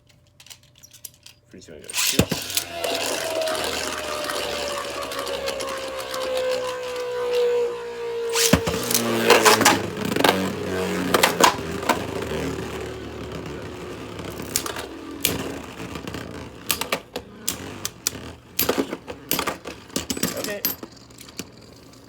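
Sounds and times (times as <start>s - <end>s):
spinning tops clacking together: 0.0s - 2.8s, 13.2s - 22.0s
spinning tops whirring: 1.8s - 22.0s.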